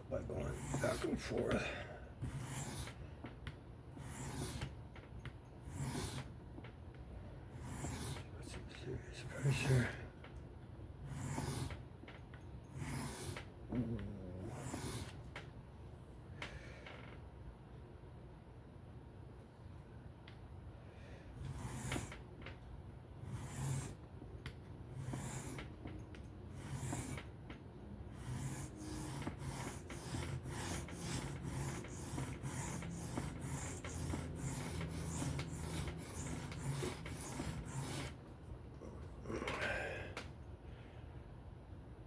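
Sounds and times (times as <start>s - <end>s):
knife scraping on whetstone: 28.3s - 38.2s.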